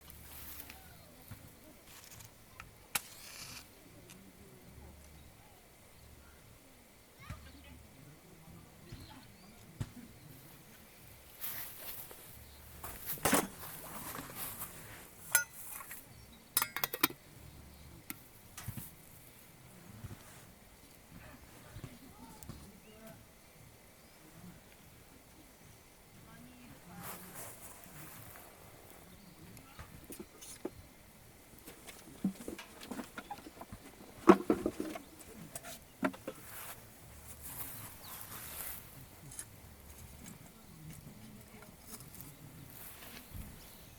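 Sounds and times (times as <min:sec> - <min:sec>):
faint hiss: 0:00.0 - 0:43.9
metal objects clinking: 0:15.3 - 0:16.0, 0:16.6 - 0:17.2.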